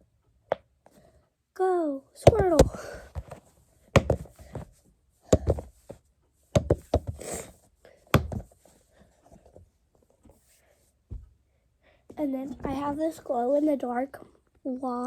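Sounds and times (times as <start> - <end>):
silicone ball thudding: 2.2 - 3.4, 4.0 - 4.6, 6.6 - 7.2, 8.1 - 8.6.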